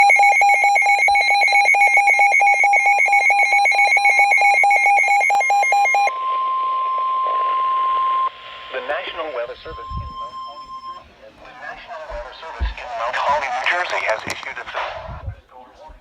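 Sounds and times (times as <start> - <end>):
rapid electronic beeping: 0.0 - 6.1.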